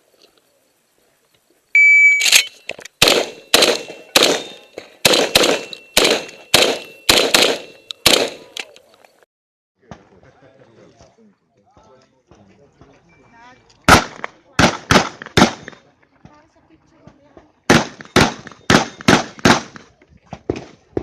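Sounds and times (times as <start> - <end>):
shot timer beep: 1.8 - 2.7
shotgun shots ringing: 2.2 - 8.7, 13.9 - 15.8, 17.7 - 19.9.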